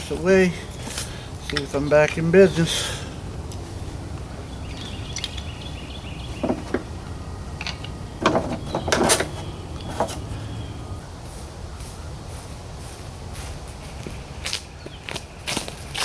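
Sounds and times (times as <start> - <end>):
low background rumble: 0.0 - 12.8
tools knocking and clattering: 6.4 - 10.3.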